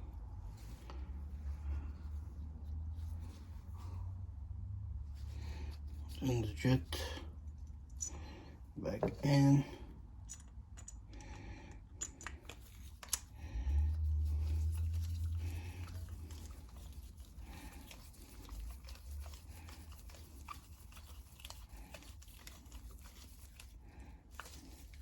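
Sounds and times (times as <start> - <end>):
small parts clicking and tapping: 10.2 - 13.4.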